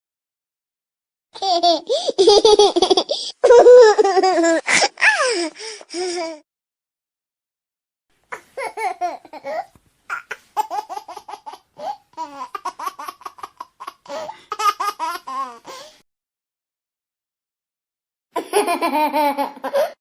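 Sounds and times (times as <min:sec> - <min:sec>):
baby giggling: 0:01.4 - 0:06.4, 0:08.3 - 0:15.9, 0:18.4 - 0:20.0.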